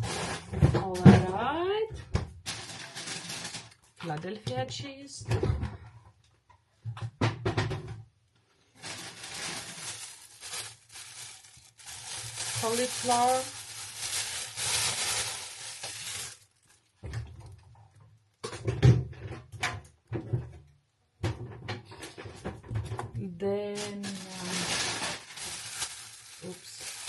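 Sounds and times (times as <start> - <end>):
plastic bag crinkling: 2.4 - 4.2, 8.7 - 17.9, 23.7 - 27.0.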